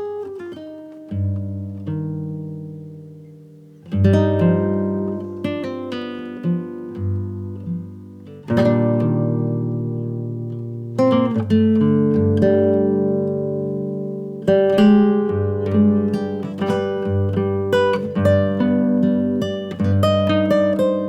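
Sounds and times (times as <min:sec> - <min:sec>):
acoustic guitar music: 0:00.0 - 0:21.0.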